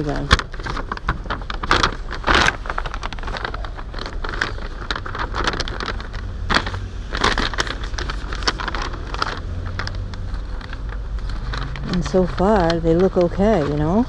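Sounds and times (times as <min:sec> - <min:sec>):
boots crinkling and rustling: 0:00.0 - 0:14.0.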